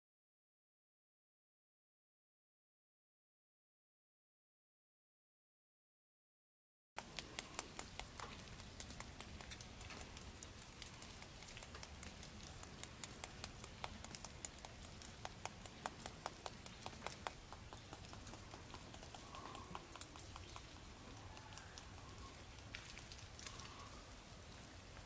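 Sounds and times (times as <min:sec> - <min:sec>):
water dripping from branches: 0:07.0 - 0:25.0.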